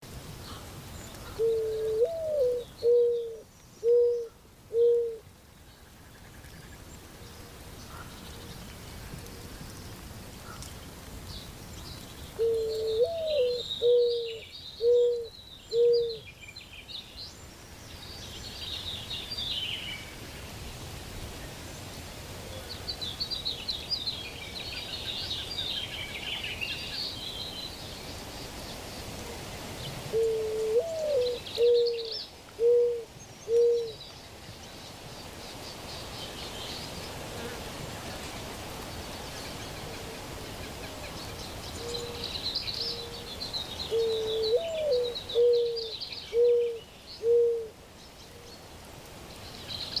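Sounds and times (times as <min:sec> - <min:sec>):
bird hooting: 0:01.2 - 0:05.2, 0:12.4 - 0:16.2, 0:30.1 - 0:34.0, 0:43.9 - 0:47.8.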